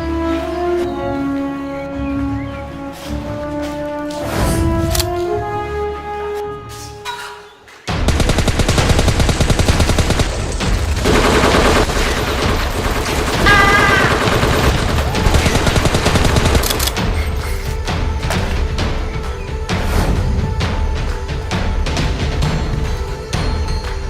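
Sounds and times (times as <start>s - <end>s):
background music: 0.0s - 24.0s
automatic gunfire sound effects: 8.0s - 17.0s.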